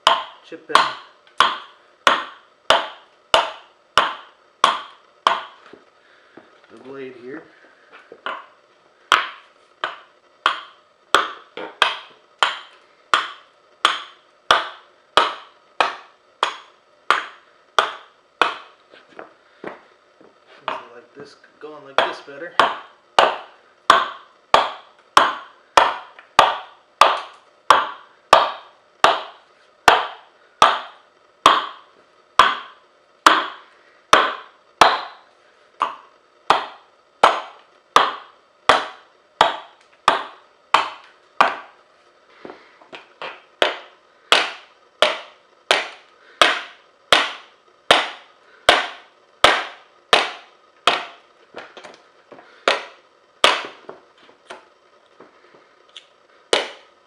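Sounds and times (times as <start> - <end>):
adze chopping wood: 0.0 - 5.6, 9.1 - 18.7, 21.9 - 31.8, 32.4 - 41.8, 43.2 - 51.8, 52.6 - 54.6, 56.5 - 56.9.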